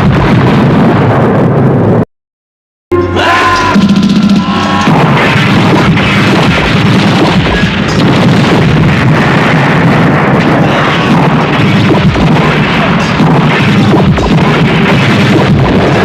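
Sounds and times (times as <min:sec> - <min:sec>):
explosions rumbling: 0:00.0 - 0:02.1, 0:03.2 - 0:16.0
sharp cracks: 0:04.6 - 0:16.0.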